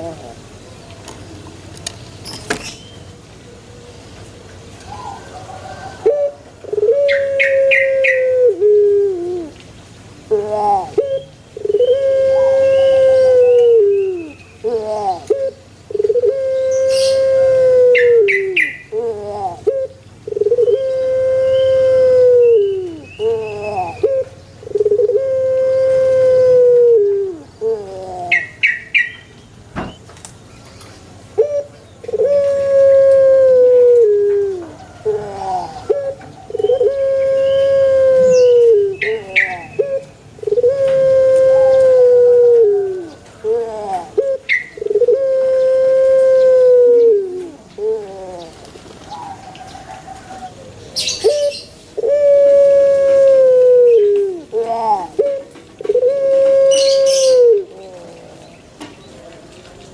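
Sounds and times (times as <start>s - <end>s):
dove cooing: 0.0s - 0.5s, 4.8s - 9.6s, 10.2s - 29.1s, 31.3s - 59.4s.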